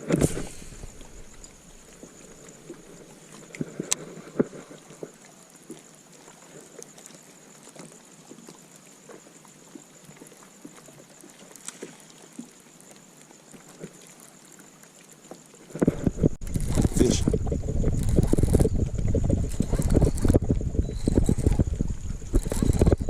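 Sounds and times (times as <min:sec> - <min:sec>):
steady high-pitched hum: 0:00.0 - 0:06.0, 0:15.8 - 0:23.0.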